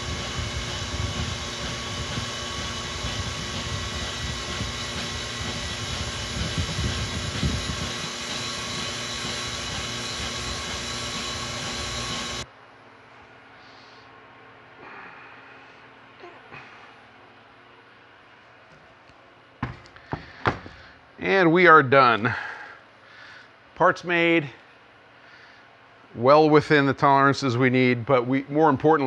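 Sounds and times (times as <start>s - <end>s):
surface grinder grinding steel: 0.0s - 12.4s.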